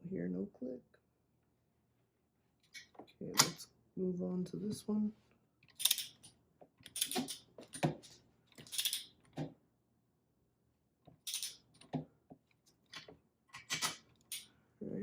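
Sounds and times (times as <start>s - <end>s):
wrench ratcheting: 5.7s - 6.2s
wrench clicking on metal bolts: 5.7s - 7.5s, 8.6s - 9.1s, 11.3s - 11.6s.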